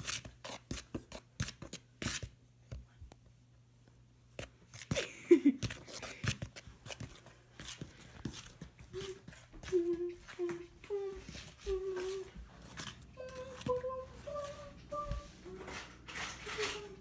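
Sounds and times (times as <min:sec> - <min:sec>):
spoon stirring dry ingredients: 0:05.6 - 0:17.0.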